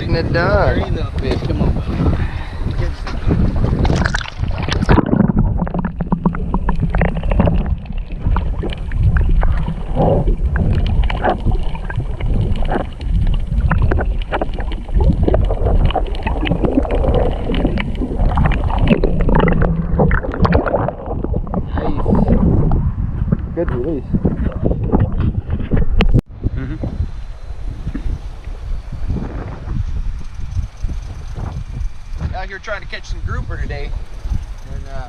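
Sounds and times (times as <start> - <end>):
wind rumbling on microphone: 0.0 - 35.0
water splashing and sloshing: 1.2 - 26.2.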